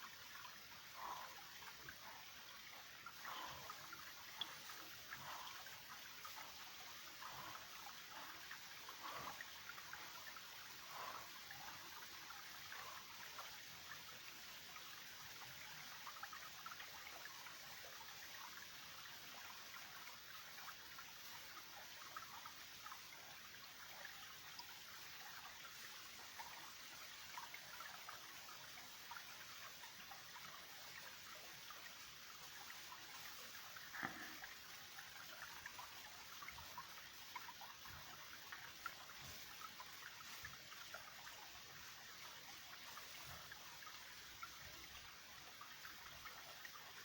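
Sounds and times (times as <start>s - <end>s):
creek trickling over stones: 0.0s - 47.0s.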